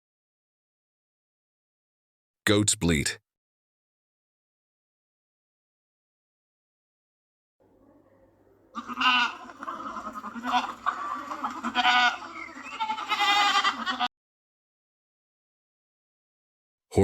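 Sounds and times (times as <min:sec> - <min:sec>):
goats bleating: 0:07.8 - 0:14.1.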